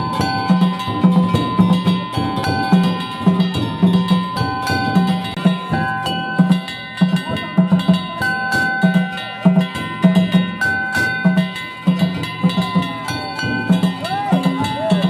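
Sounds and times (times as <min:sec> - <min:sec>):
small hand gongs clanging: 0:00.0 - 0:15.0
taiko drum beating: 0:00.0 - 0:15.0.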